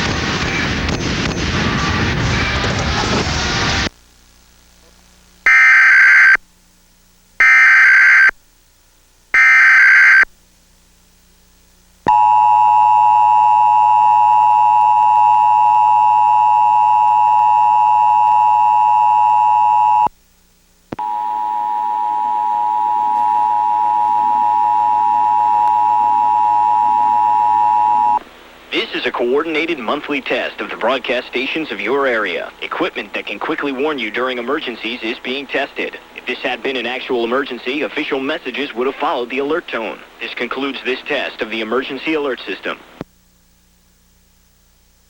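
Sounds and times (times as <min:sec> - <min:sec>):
digital header data bursts: 0:05.5 - 0:06.4
two-tone attention signal: 0:05.5 - 0:06.4.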